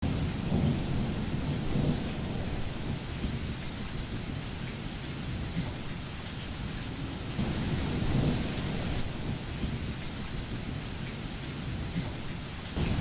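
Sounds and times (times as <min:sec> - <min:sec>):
low rolling thunder: 0:00.0 - 0:04.5, 0:07.3 - 0:10.8, 0:12.8 - 0:13.0
steady rain: 0:00.0 - 0:13.0.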